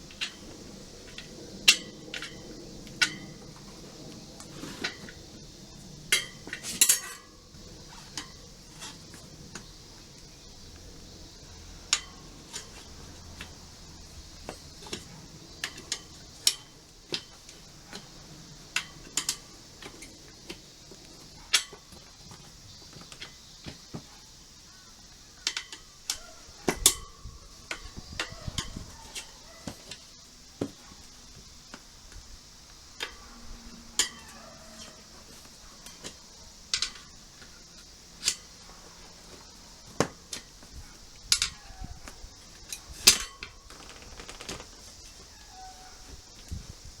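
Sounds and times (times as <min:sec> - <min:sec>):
metal tools clinking on wheel: 0:06.1 - 0:09.6, 0:33.0 - 0:39.4.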